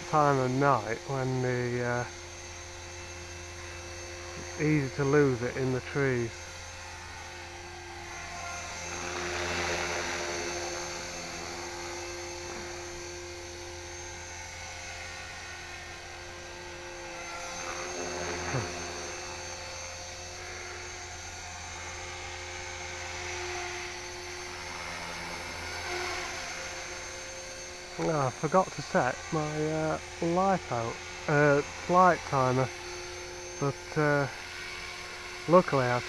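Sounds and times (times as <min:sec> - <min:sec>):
rc helicopter motor whine: 0:00.0 - 0:36.0.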